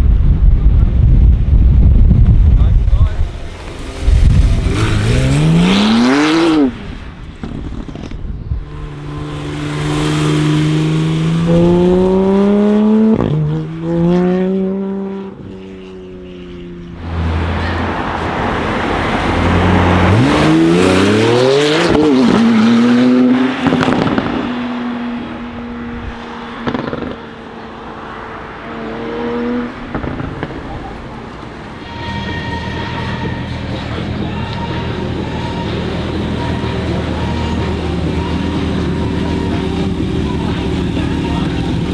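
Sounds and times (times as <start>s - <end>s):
exhaust cracks: 0.6s - 14.0s, 16.9s - 31.9s
sports car engine revving: 2.8s - 31.9s.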